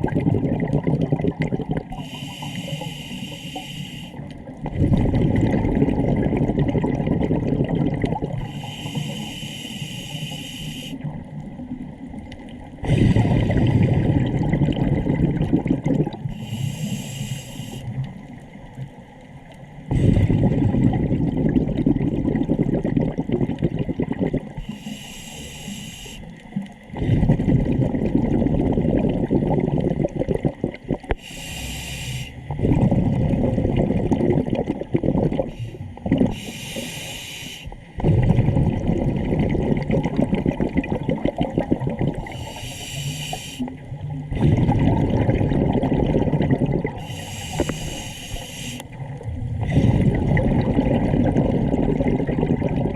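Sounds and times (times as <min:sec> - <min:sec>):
exhaled bubbles rushing: 0:00.0 - 0:02.1, 0:04.2 - 0:08.5, 0:11.0 - 0:16.4, 0:19.9 - 0:24.7, 0:26.4 - 0:31.2, 0:32.4 - 0:36.5, 0:37.9 - 0:42.6, 0:43.6 - 0:52.9
diver inhaling through regulator: 0:01.9 - 0:04.2, 0:08.4 - 0:11.1, 0:12.8 - 0:14.1, 0:16.3 - 0:18.0, 0:24.6 - 0:26.4, 0:31.1 - 0:32.9, 0:35.4 - 0:38.0, 0:42.2 - 0:44.8, 0:46.9 - 0:48.9, 0:49.6 - 0:50.3.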